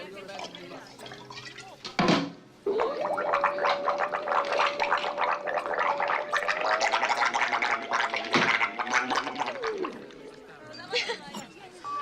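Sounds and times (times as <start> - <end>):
mouth imitating a blender: 2.6 - 10.2.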